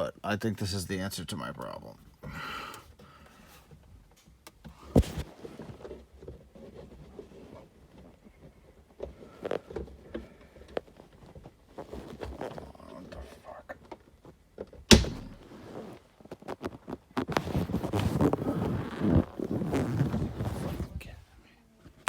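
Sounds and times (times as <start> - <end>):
clicks and knocks of car trim: 14.9 - 15.5
sharp knock: 14.9 - 15.5.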